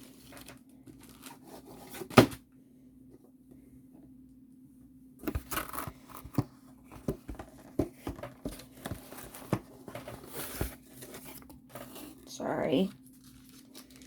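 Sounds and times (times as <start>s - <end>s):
packaging crinkling and tearing: 0.0s - 2.1s, 12.9s - 14.0s.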